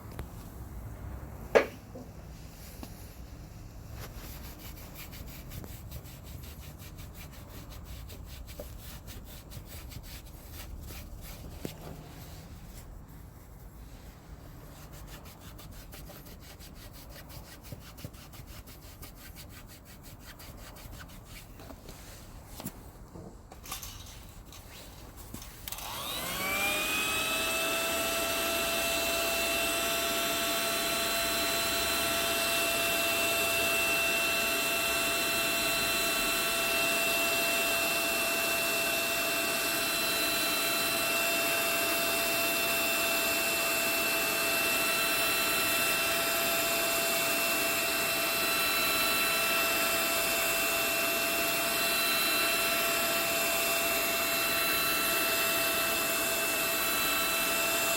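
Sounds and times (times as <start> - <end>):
electric motor whine: 25.6 - 57.9.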